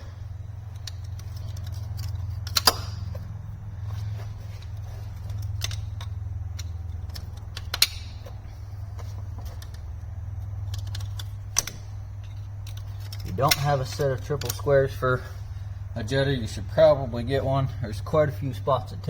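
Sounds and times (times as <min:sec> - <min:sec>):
steady low hum: 0:00.0 - 0:19.0
hand tools clinking on metal: 0:12.2 - 0:15.1.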